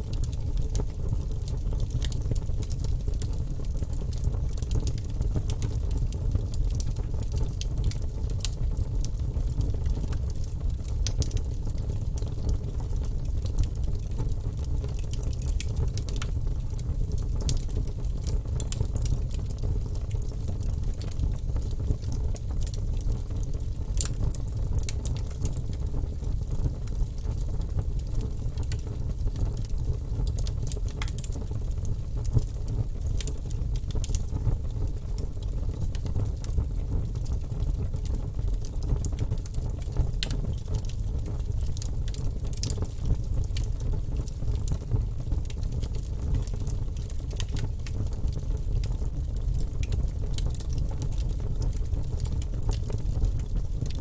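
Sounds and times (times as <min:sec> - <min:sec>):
fire crackling and popping: 0:00.0 - 0:54.0
fire rumbling in fireplace: 0:00.0 - 0:54.0.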